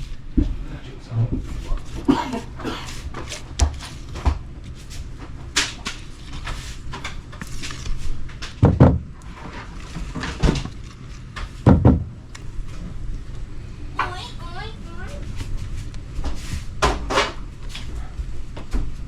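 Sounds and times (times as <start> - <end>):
steady low hum: 0.0 - 19.0
heavy thuds: 8.5 - 13.0.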